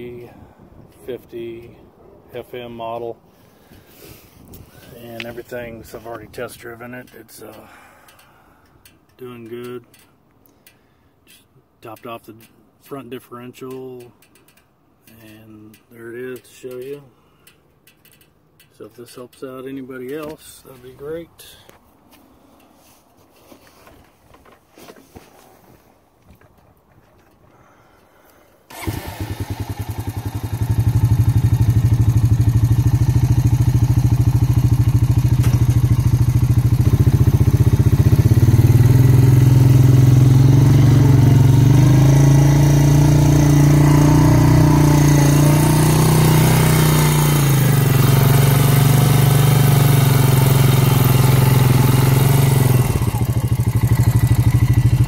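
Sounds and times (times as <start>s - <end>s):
atv engine starting and running: 28.7s - 55.0s.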